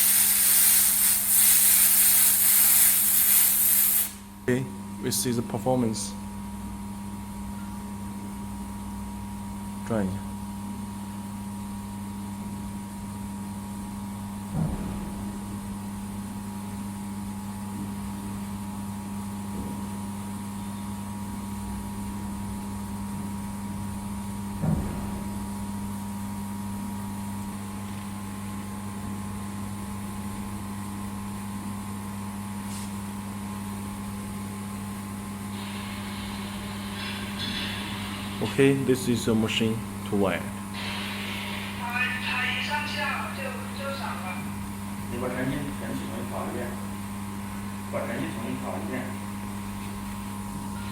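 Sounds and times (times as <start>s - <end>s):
welding machine electrical hum: 0.0s - 50.9s
brief knocks: 24.6s - 25.4s.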